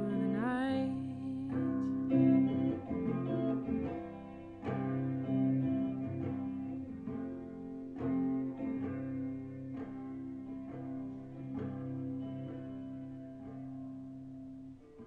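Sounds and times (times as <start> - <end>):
guitar strumming slow chords: 0.0 - 15.0.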